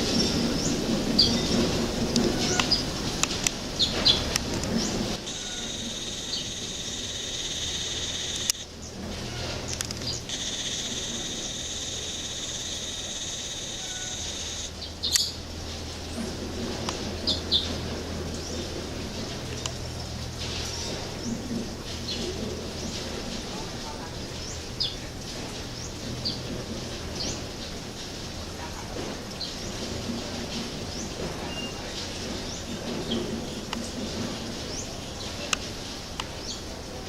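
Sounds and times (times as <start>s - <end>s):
birds chirping: 0.0s - 17.8s
high-pitched buzz: 5.2s - 14.8s.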